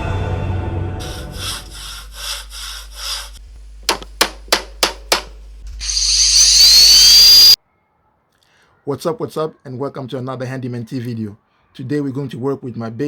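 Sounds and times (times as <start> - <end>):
sharp knocks: 3.9 - 5.4
rising whoosh with whistling glides: 5.8 - 7.6.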